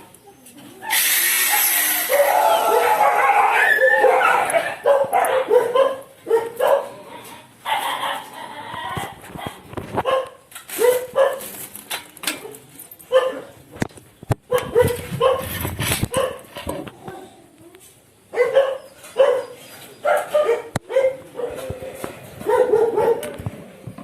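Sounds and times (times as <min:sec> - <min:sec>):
dog barking and yipping: 0:00.9 - 0:07.0, 0:09.4 - 0:11.5, 0:13.1 - 0:13.5, 0:14.5 - 0:16.5, 0:18.3 - 0:21.7, 0:22.4 - 0:23.3.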